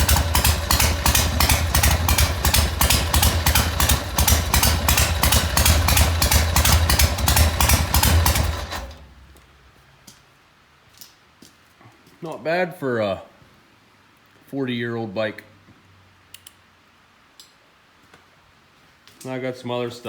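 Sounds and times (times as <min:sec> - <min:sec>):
motorcycle engine idling: 0:00.0 - 0:09.3.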